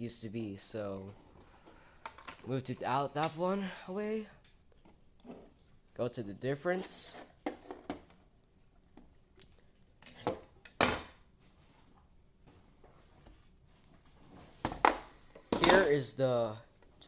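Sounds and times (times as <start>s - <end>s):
objects knocking and clattering: 7.4s - 8.2s, 14.5s - 16.0s.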